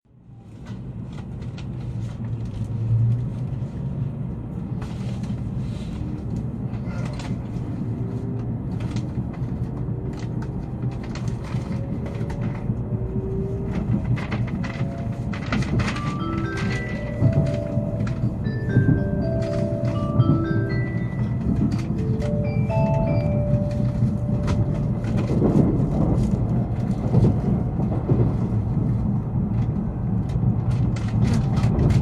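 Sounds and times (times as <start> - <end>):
train running rumble: 0.1 - 32.0
small clicks and rattles: 8.2 - 12.9, 13.6 - 32.0.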